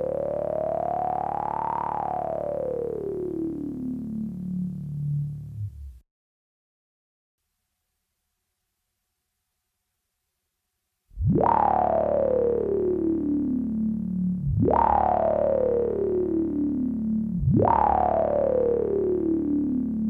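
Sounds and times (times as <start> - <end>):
synthesizer sweep effect: 0.0 - 6.0, 11.2 - 20.0
steady low drone: 11.2 - 20.0.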